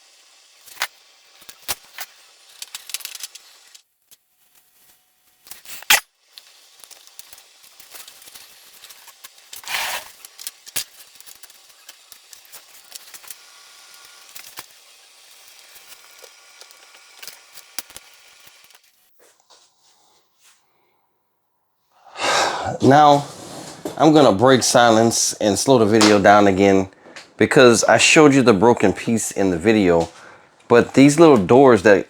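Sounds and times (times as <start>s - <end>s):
small parts clicking and tapping: 2.5s - 4.2s
scraping rustle: 22.8s - 25.4s.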